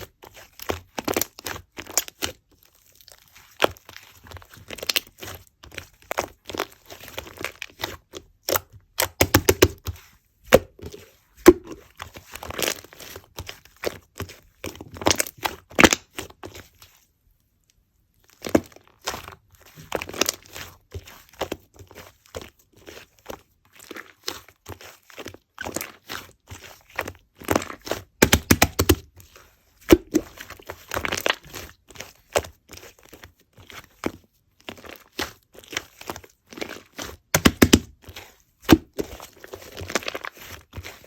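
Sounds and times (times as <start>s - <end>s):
slime squished by hand: 3.0s - 16.4s, 23.8s - 29.2s, 29.8s - 33.0s, 33.7s - 41.0s.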